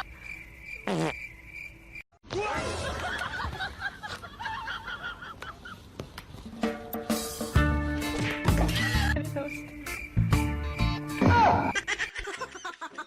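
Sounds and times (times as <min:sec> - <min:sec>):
snickering laughter: 0:02.6 - 0:05.8, 0:11.7 - 0:13.0.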